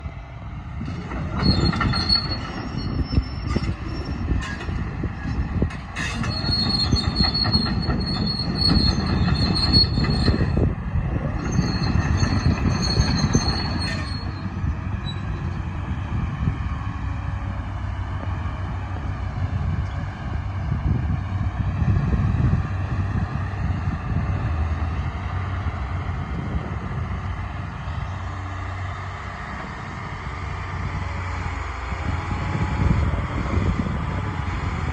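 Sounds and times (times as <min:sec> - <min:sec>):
excavator diesel engine rumbling: 0:00.0 - 0:34.9
high-pitched metallic squeal: 0:01.1 - 0:15.6.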